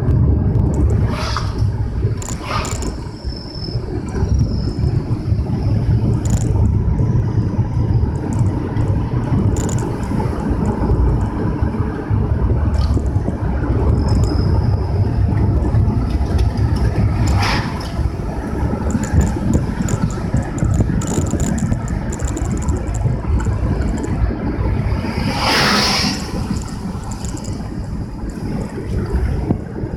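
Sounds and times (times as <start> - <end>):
vehicle driving on road: 0.0 - 29.9
faint clicks: 6.1 - 6.8, 8.1 - 11.4, 18.8 - 24.2, 26.4 - 28.8.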